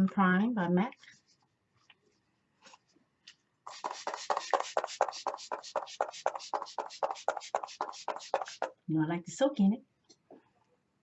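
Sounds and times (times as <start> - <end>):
spray bottle hissing sprays: 3.7 - 8.7.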